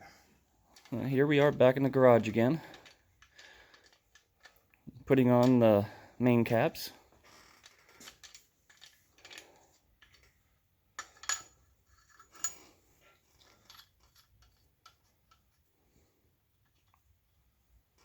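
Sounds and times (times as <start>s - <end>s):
light metallic clinks and taps: 11.0s - 12.8s.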